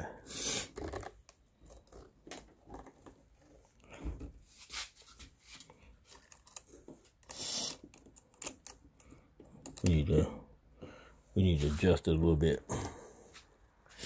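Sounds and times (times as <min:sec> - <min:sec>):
rustling scrape: 0:04.4 - 0:06.4.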